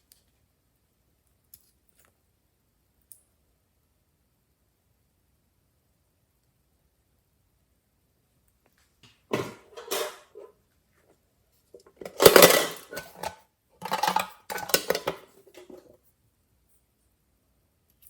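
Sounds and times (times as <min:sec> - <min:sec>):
utensil scraping and clacking: 0:09.4 - 0:10.5, 0:11.8 - 0:15.9.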